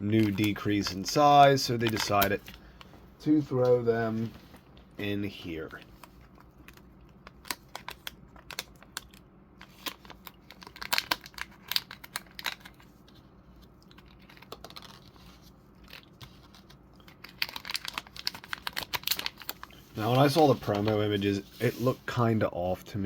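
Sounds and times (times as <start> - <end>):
plastic bag crinkling: 13.7 - 21.8.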